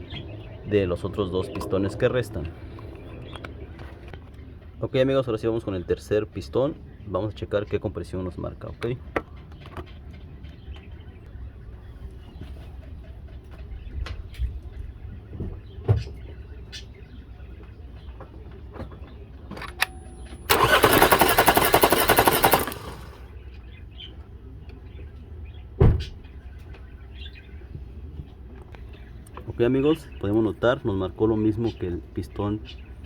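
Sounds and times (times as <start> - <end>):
starter motor cranking engine: 19.6 - 23.3
thump: 25.8 - 26.1.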